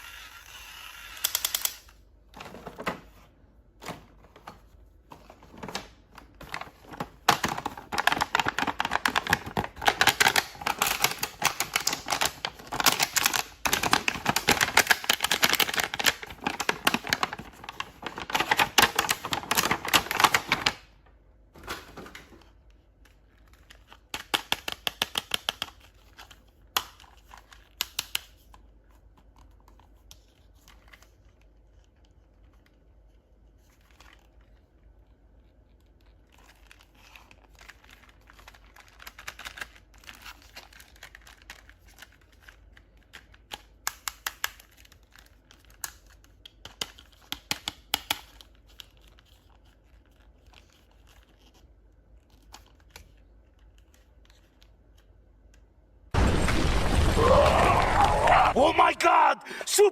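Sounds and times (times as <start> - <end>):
plastic packaging rustling: 4.1 - 21.0
plastic packaging crinkling and tearing: 6.5 - 20.9, 33.6 - 43.6.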